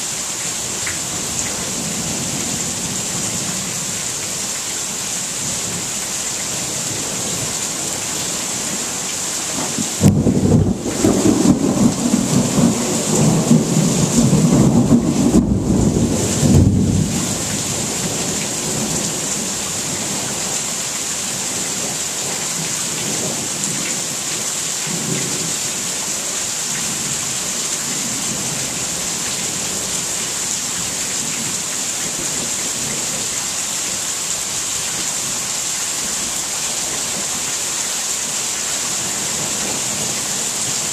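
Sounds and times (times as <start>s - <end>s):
steady rain: 0.0s - 40.9s
thunder rumbling: 9.7s - 19.2s.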